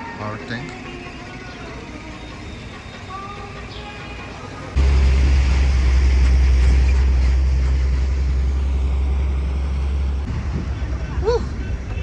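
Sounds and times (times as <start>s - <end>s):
low rumble of moving car: 4.7s - 12.0s.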